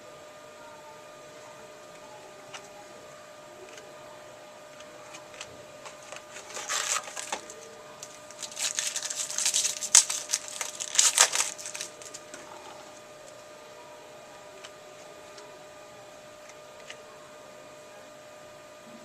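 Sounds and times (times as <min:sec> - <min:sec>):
foil wrappers crinkling and tearing: 0:04.8 - 0:13.4.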